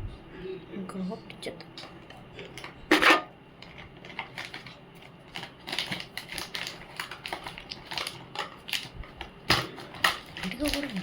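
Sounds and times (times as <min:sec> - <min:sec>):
plastic items clicking and clattering: 0:02.6 - 0:11.0.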